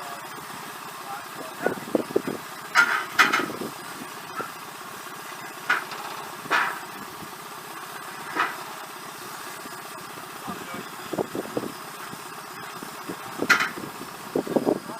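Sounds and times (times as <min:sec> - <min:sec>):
engine idling: 0:00.0 - 0:14.9
sharp knocks: 0:02.7 - 0:03.5, 0:05.7 - 0:06.8.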